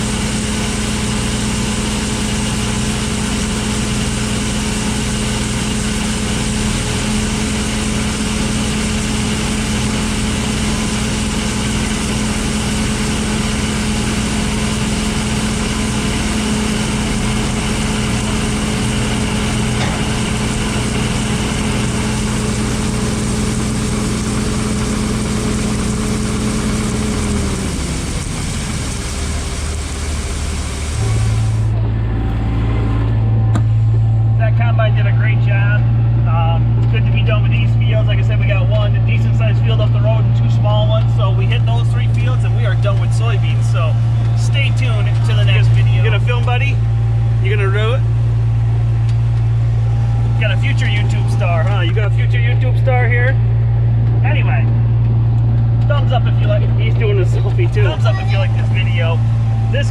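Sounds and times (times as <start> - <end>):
combine harvester running: 0.0 - 59.9.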